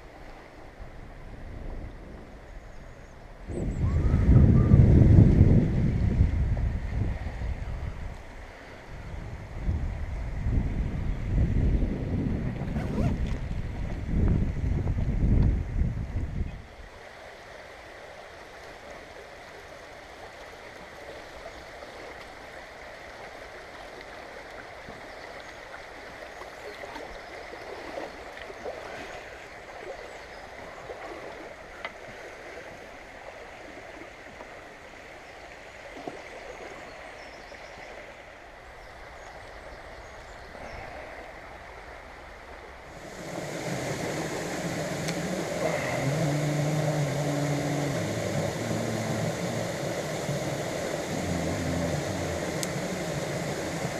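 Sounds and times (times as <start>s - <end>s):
stream rushing over rocks: 41.0s - 53.9s.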